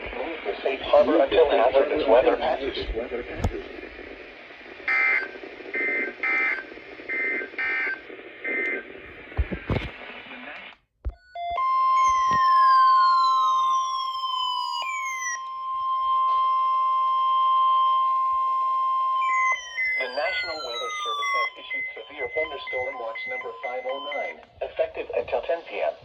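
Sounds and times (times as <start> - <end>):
digital data bursts: 0.0 - 8.9, 19.2 - 25.8
steady warning alarm tone: 0.0 - 8.9, 11.2 - 24.6
radio hiss: 0.0 - 10.8, 20.0 - 26.0.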